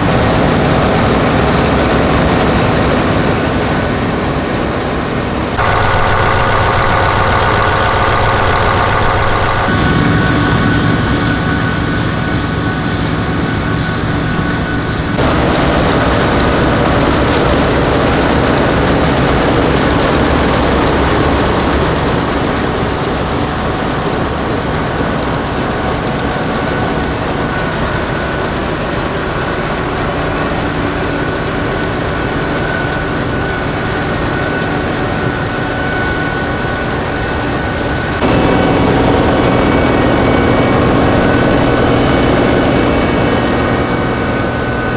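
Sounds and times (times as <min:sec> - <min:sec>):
diesel combine engine running: 0:00.0 - 0:44.9.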